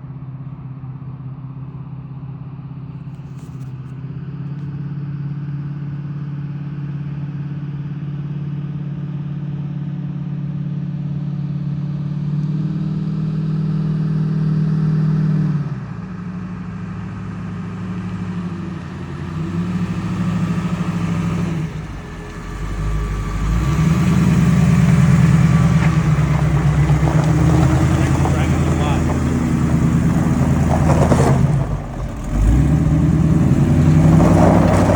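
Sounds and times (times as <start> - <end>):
vehicle engine accelerating: 11.8 - 34.9.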